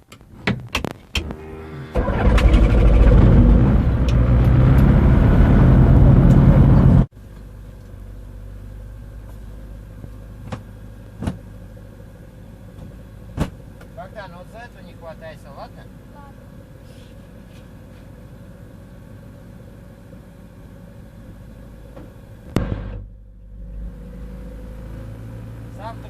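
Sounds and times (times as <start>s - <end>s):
piston engine cranking and running: 1.9s - 5.0s.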